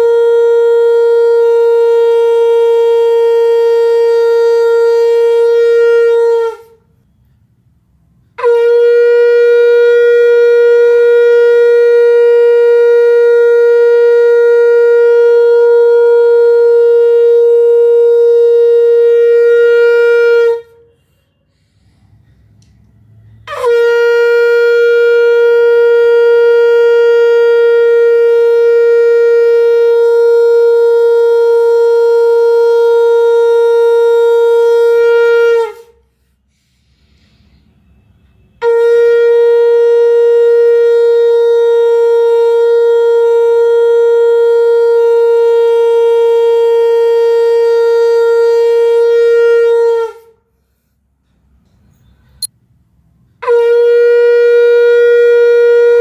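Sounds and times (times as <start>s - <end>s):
conch shell blasts: 0.0s - 7.2s, 8.3s - 21.7s, 23.2s - 36.0s, 37.8s - 50.4s, 53.4s - 56.0s.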